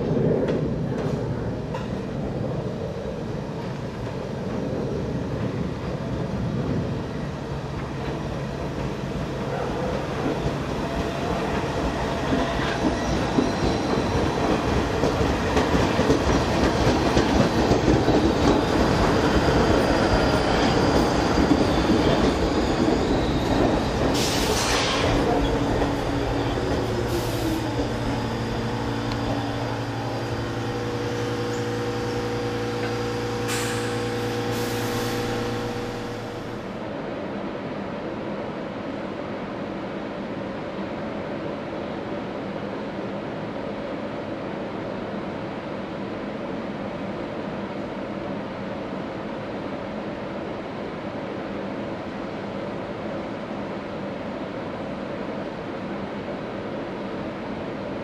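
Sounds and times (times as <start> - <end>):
train wheels rumbling on rail: 0.0 - 37.5.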